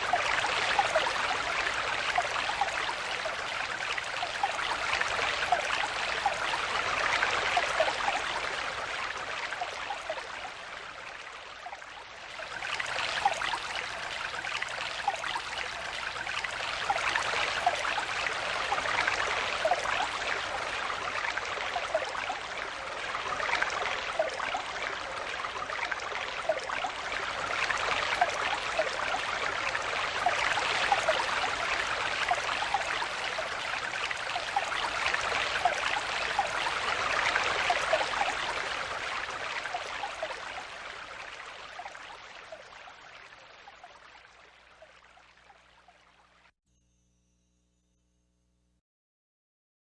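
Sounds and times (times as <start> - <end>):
stream flowing and babbling: 0.0 - 46.5.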